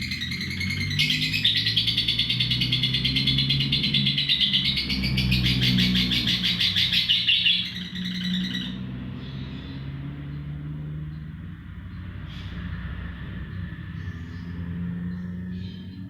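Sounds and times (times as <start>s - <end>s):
bird chattering trill: 0.0s - 8.8s.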